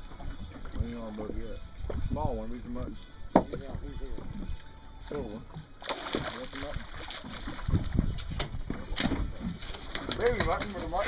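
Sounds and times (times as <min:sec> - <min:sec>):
low rumble of water and boat: 0:00.0 - 0:11.0
knocks and thuds on boat deck: 0:03.3 - 0:03.7, 0:07.3 - 0:11.0.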